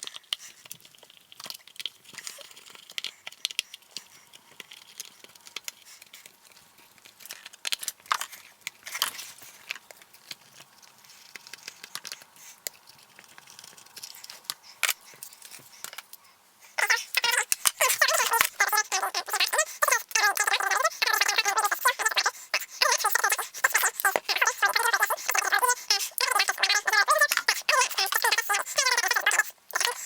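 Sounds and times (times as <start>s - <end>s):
high-pitched chattering: 16.8s - 30.0s.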